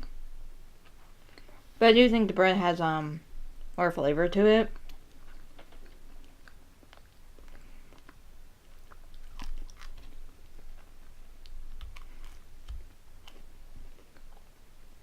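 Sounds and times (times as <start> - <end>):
crunchy biting and chewing: 4.7 - 14.6.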